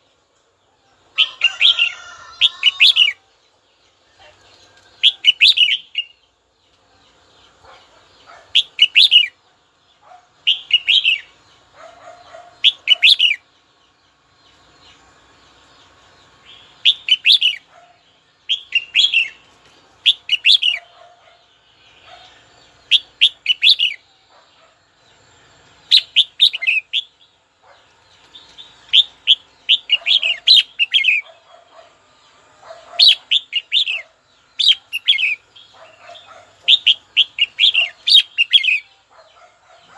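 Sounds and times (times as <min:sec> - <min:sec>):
bird chirping phrases: 0:00.0 - 0:39.9.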